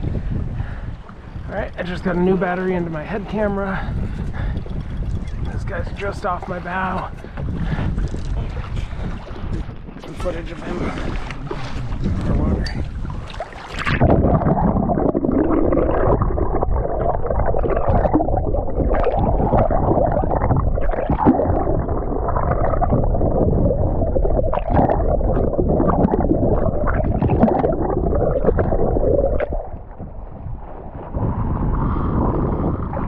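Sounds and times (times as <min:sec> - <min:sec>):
underwater rushing and gurgling: 0:00.0 - 0:33.0
small underwater clicks and knocks: 0:04.2 - 0:06.6, 0:07.2 - 0:10.3.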